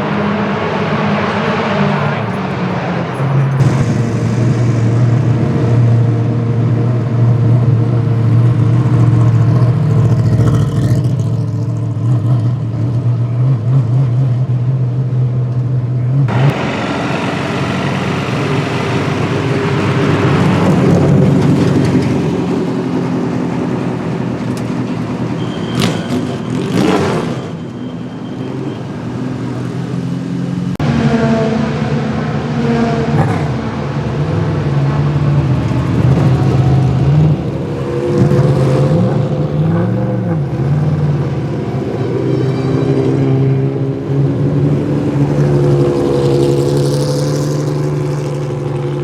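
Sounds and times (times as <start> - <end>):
engine sweeping whine: 0.0 - 13.2, 16.2 - 49.0
race car engines idling: 0.0 - 30.8.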